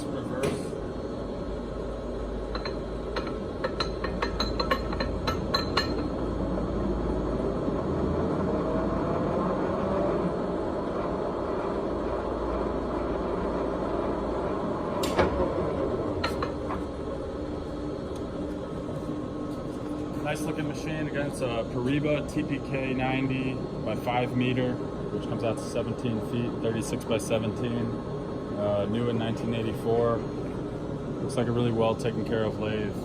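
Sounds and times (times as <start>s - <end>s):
lathe machine hum: 0.0s - 33.0s.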